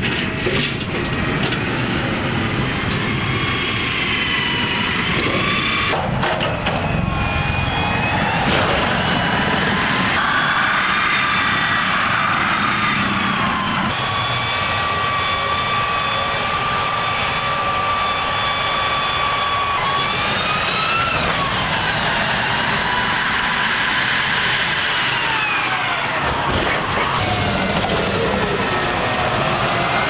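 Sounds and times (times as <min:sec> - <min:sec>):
gas turbine engine whine: 0:00.0 - 0:30.0.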